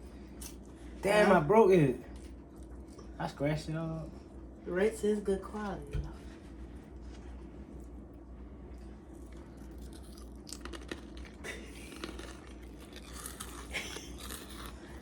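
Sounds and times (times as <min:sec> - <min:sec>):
crackers and wrapper crinkling: 0:09.4 - 0:14.9.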